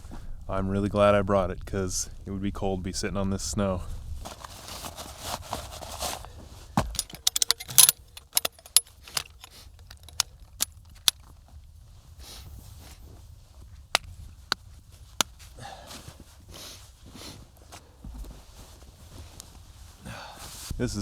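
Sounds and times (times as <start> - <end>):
fabric rustling: 4.2 - 8.6, 16.1 - 20.7
metal poles clicking together: 7.0 - 11.2.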